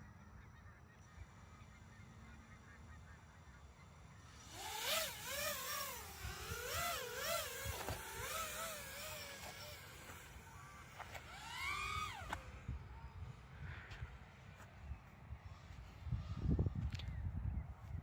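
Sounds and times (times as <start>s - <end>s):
drone motors whining: 4.3s - 14.0s.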